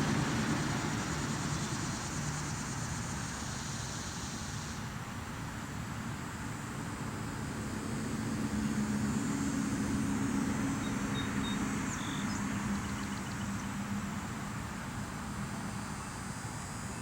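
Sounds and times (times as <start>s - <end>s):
road noise: 0.0s - 17.0s
vehicle engine hum: 0.0s - 17.0s.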